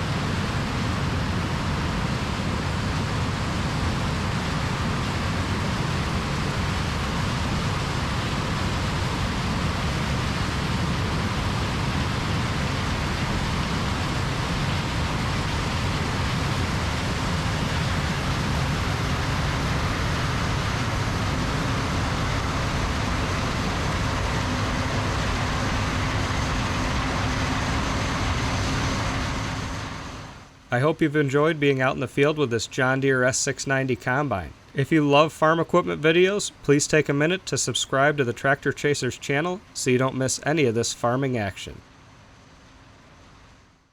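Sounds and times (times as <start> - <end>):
heavy farm machinery running: 0.1 - 31.6.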